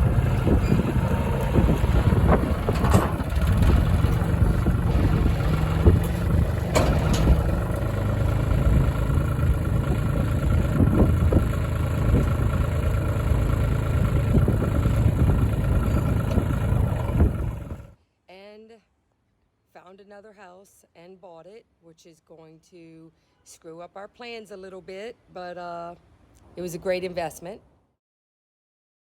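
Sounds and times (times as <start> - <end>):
knocks and clanks: 0.0 - 17.9
tractor engine running: 0.0 - 18.0.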